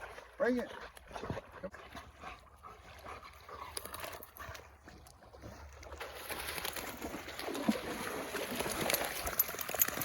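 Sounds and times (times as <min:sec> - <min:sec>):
dog splashing in water: 0:03.1 - 0:10.0.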